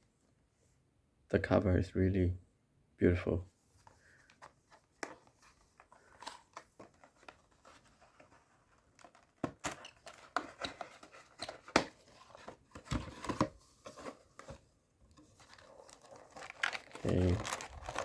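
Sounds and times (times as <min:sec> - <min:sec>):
cardboard box being opened: 0:05.2 - 0:18.0
plastic wrap crinkling: 0:15.1 - 0:18.0.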